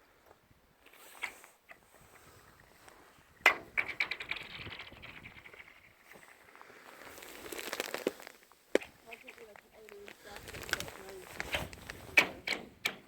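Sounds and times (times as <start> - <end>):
ringing chirping ice trail: 0.0 - 12.6
lake ice cracking and ringing: 3.4 - 12.6.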